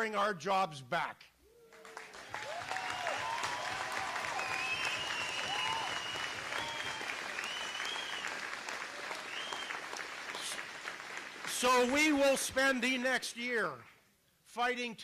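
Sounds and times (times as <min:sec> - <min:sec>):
crowd cheering: 0:01.5 - 0:12.4
crowd applauding: 0:01.6 - 0:12.4
whistles: 0:02.8 - 0:08.4, 0:09.1 - 0:10.6.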